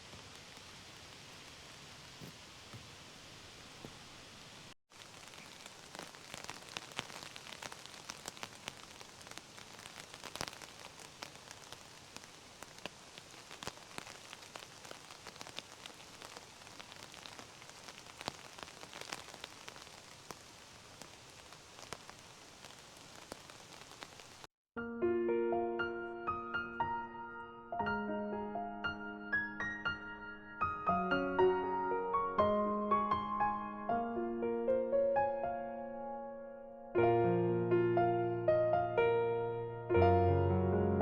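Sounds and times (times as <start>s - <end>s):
raindrops striking close by: 0.0s - 24.5s
steady rain falling: 0.0s - 24.5s.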